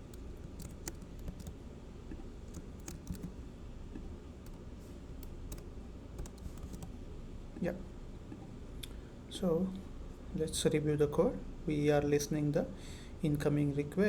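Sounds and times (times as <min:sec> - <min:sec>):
low background hum: 0:00.0 - 0:14.0.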